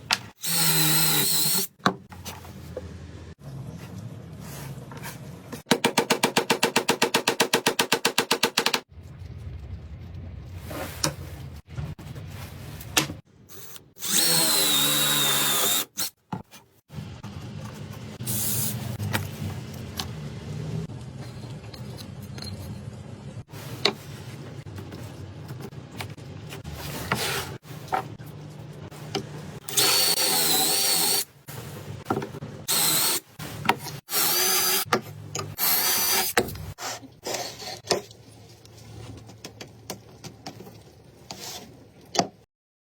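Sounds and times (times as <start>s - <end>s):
power drill motor whining: 13.6s - 16.1s, 29.7s - 31.2s.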